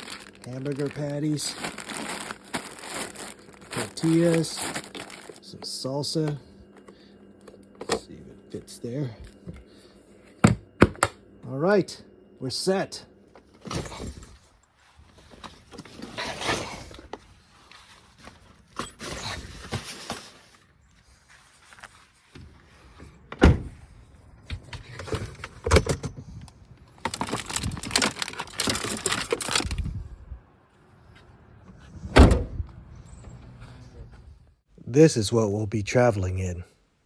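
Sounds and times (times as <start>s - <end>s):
rustling and clatter of packing: 0.0s - 8.2s, 13.4s - 23.1s, 24.4s - 29.9s.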